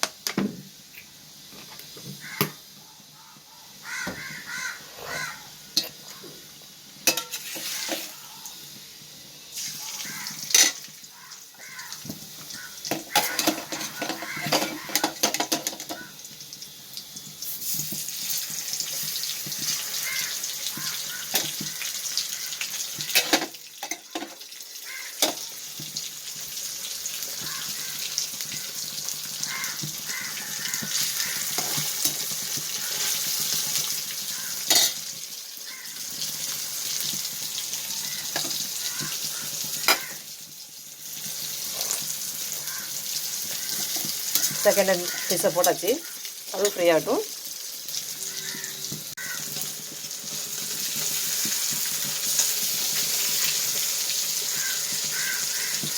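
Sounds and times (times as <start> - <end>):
fish sizzling in a pan: 0.0 - 55.9
utensils clinking against a pan: 5.8 - 6.1, 7.0 - 8.2, 10.0 - 10.9, 12.5 - 16.1, 17.4 - 21.7, 23.0 - 26.0, 29.5 - 35.2, 38.2 - 40.3, 43.4 - 47.2.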